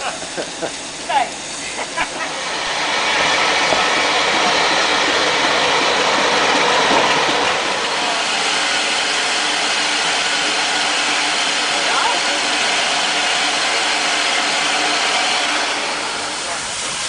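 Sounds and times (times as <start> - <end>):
steam locomotive hissing: 0.0 - 17.0.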